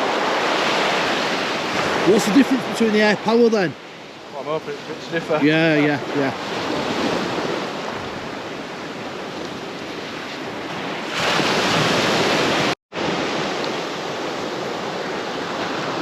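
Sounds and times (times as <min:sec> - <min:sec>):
surf washing on shore: 0:00.0 - 0:16.0
wind on microphone: 0:05.7 - 0:16.0.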